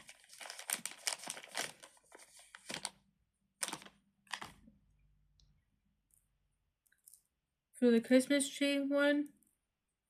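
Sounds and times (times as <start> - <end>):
plastic items crinkling: 0.0 - 3.0, 3.6 - 4.7.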